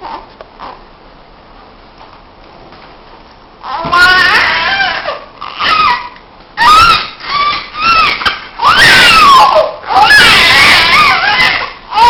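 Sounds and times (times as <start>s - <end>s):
baby crying: 3.6s - 12.0s.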